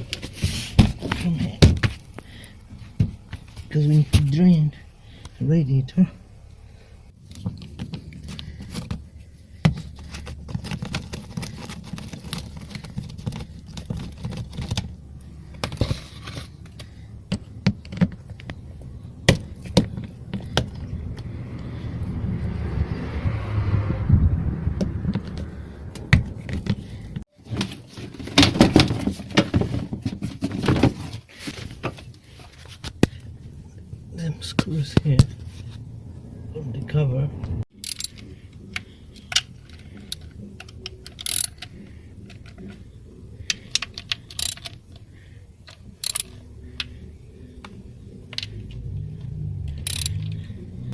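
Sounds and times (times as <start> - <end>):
hand tools on engine parts: 37.7 - 50.9.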